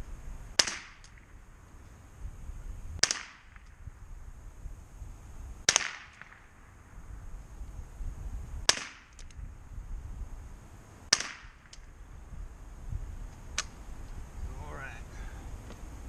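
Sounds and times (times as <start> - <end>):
rifle shots: 0.6 - 1.3, 3.0 - 3.6, 5.6 - 6.6, 8.6 - 9.3, 11.1 - 11.7.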